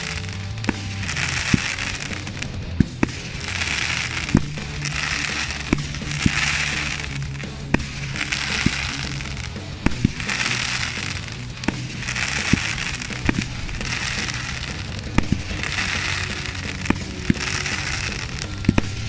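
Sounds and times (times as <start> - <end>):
background music: 0.0 - 19.0
firework bangs: 0.0 - 19.0
firework hissing and fizzing: 0.0 - 19.0.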